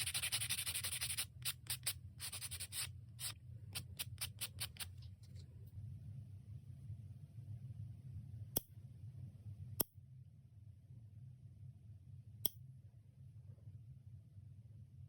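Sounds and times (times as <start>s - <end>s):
dust collector fan humming: 0.0s - 5.0s.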